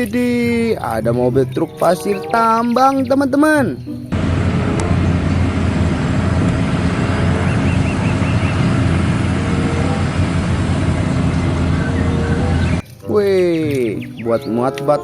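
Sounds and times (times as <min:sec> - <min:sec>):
road traffic noise: 0:00.0 - 0:15.0
truck engine rumbling: 0:00.0 - 0:15.0.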